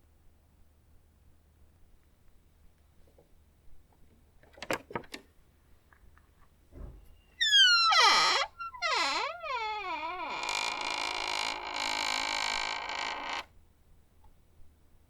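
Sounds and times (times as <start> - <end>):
door hinges creaking: 6.8 - 13.5.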